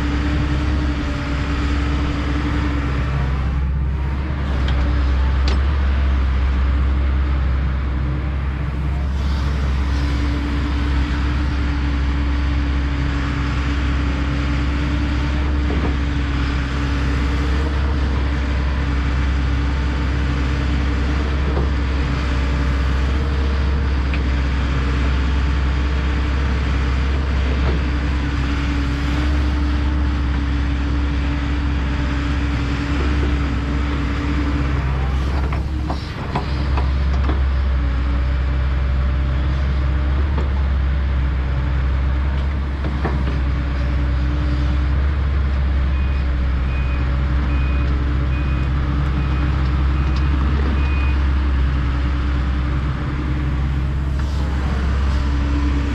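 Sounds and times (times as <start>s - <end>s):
excavator diesel engine droning: 0.0s - 55.9s.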